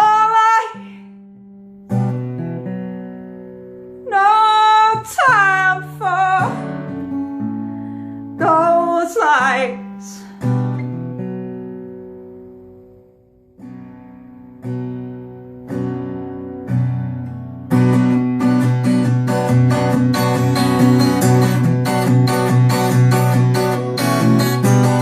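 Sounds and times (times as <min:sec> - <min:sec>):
acoustic guitar strumming: 0:00.0 - 0:25.0.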